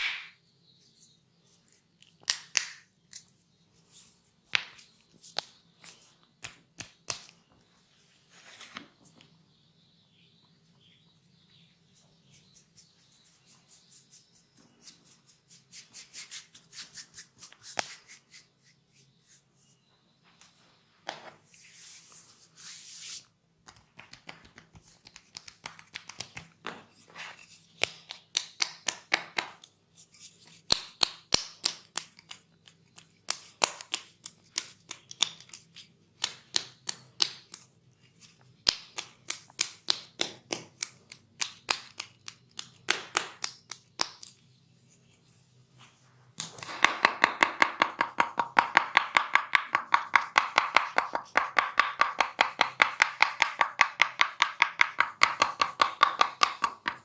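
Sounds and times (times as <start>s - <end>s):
hands slapping the body: 6.4s - 7.4s, 23.6s - 26.6s, 38.6s - 44.3s.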